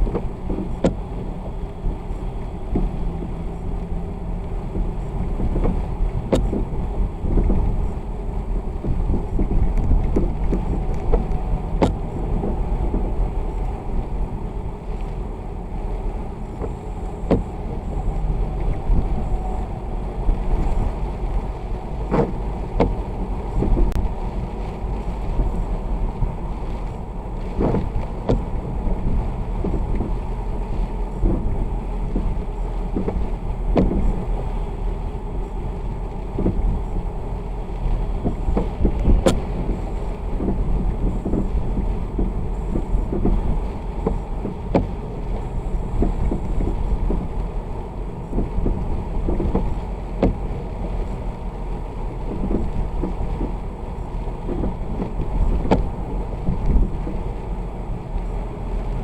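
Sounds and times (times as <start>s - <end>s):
vehicle driving on wet road: 0.0s - 59.0s
sharp ticks and knocks: 0.1s - 1.0s, 4.7s - 6.7s, 33.8s - 34.1s.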